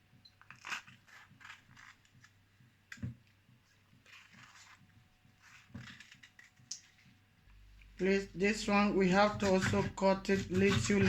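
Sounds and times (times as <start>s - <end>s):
knife slicing pepper: 0.4s - 2.3s, 8.9s - 11.0s.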